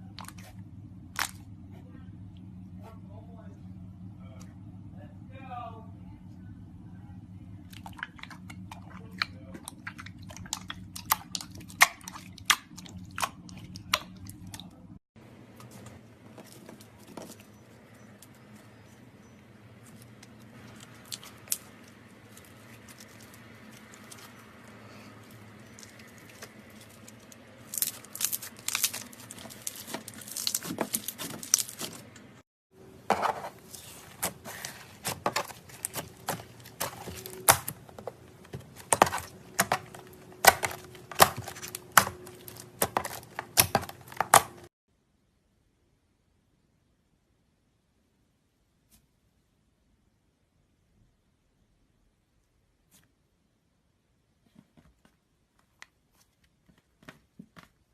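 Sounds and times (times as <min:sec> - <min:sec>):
soft slime handling: 0:15.4 - 0:32.4, 0:33.2 - 0:43.9
slime crackling and popping: 0:20.6 - 0:24.3, 0:25.6 - 0:32.1.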